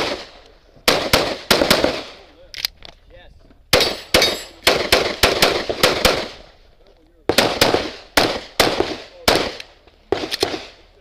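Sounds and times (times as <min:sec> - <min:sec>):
handgun shots echoing: 0:03.7 - 0:06.4, 0:07.3 - 0:10.7.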